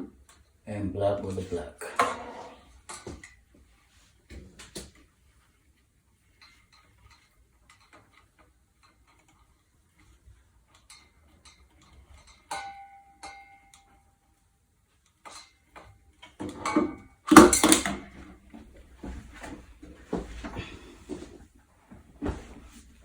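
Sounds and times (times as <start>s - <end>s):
clattering and rustling: 1.4s - 14.0s, 15.0s - 23.0s
metal part clinking: 17.3s - 18.0s.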